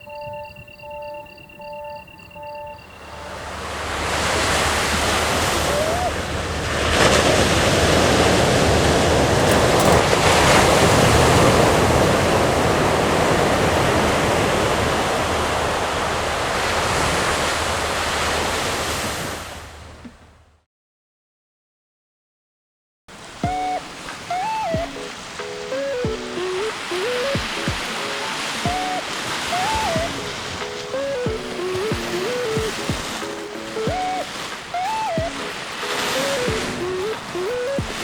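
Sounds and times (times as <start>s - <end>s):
sea waves washing onto shore: 2.9s - 20.0s, 23.1s - 38.0s.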